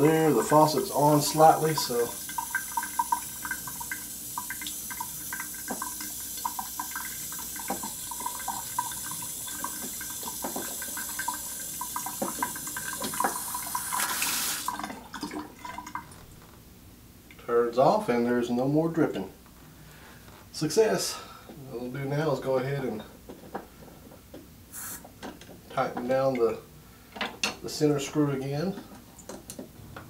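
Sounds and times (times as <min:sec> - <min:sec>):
faucet water splashing into sink: 0:00.0 - 0:16.2.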